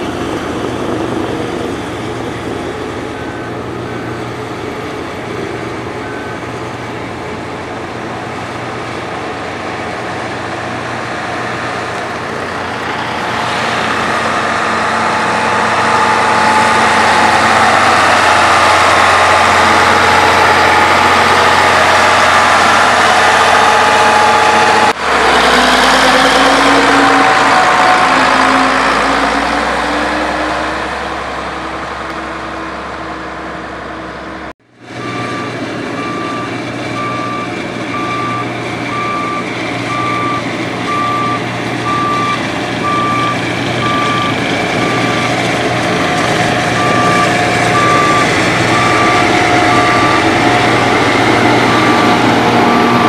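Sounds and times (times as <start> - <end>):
heavy construction machinery engine: 0.0 - 53.0.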